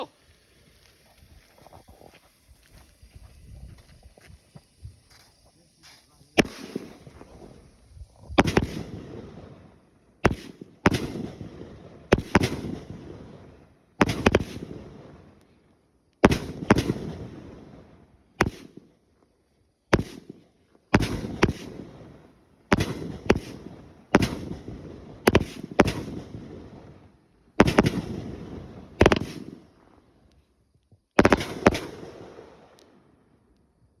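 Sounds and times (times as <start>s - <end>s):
firework cake bangs: 5.8s - 7.7s, 8.3s - 9.6s, 10.2s - 15.0s, 16.3s - 17.5s, 18.4s - 18.8s, 20.0s - 20.4s, 21.0s - 27.0s, 27.6s - 29.7s, 31.2s - 32.5s.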